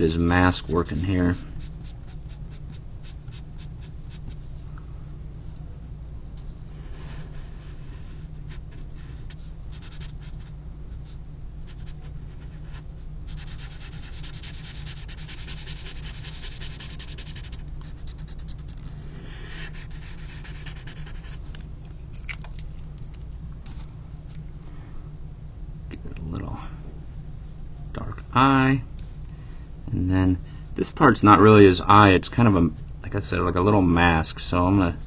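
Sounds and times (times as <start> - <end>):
steady low hum: 0.0 - 35.0
pencil scratching on paper: 0.4 - 4.4, 7.0 - 21.5.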